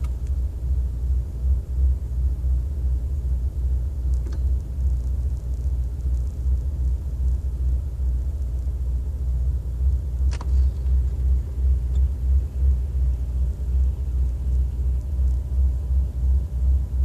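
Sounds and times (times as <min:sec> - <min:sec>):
engine idling roughly: 0:00.0 - 0:17.0
sharp click: 0:10.3 - 0:10.6.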